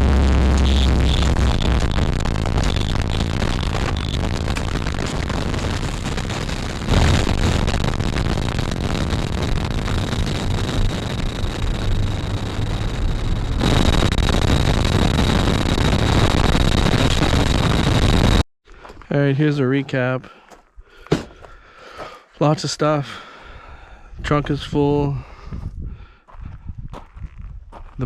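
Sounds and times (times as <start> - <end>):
faint high whine: 0.0 - 18.4.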